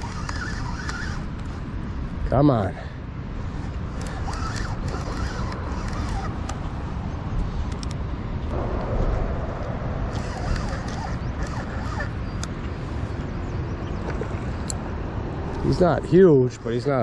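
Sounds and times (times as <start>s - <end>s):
spinning reel being wound: 0.0s - 1.3s, 4.0s - 6.3s
steady low rumble: 0.0s - 17.0s.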